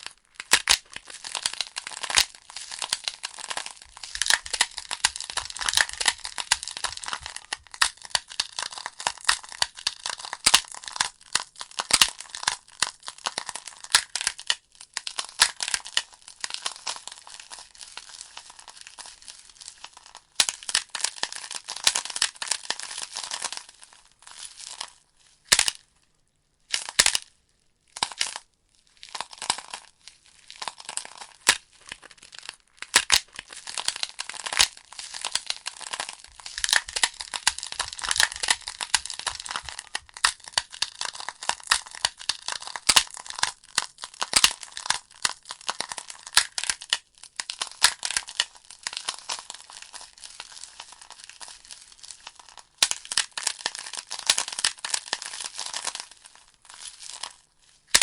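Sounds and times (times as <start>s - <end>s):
fire crackling and popping: 0.0s - 12.2s, 30.6s - 56.1s.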